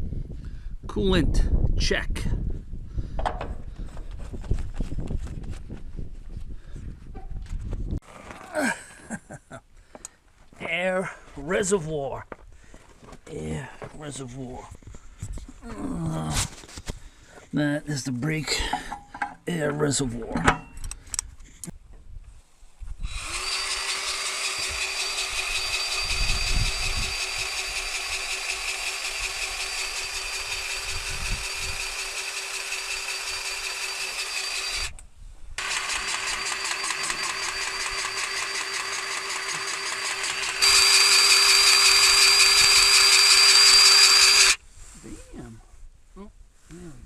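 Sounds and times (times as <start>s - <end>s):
grease gun motor whining: 23.1s - 35.0s, 35.6s - 44.6s.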